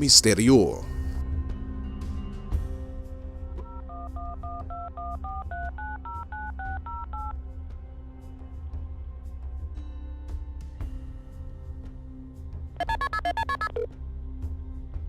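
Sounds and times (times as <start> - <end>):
low background music: 0.0 - 15.0
touch-tone keypad tones: 12.8 - 13.9.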